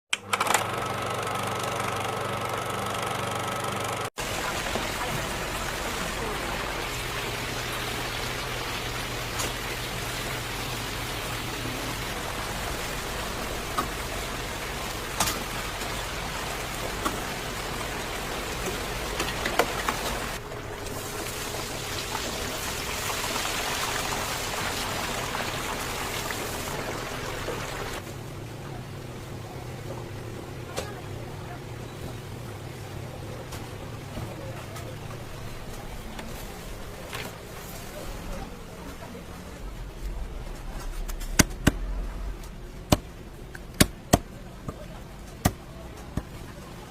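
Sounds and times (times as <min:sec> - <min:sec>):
chicken sizzling in hot oil: 0:04.2 - 0:28.0
machine hum: 0:38.2 - 0:45.9.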